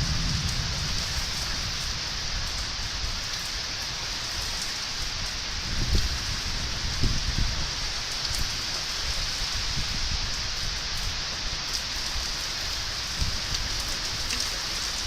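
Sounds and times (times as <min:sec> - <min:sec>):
low thunder rumbles: 0:00.0 - 0:03.5
rain falling steadily: 0:00.0 - 0:15.0.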